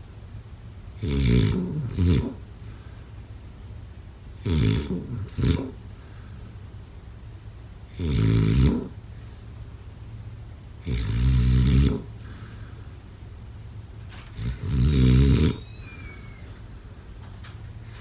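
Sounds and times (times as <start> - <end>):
person snoring: 14.4 - 15.6.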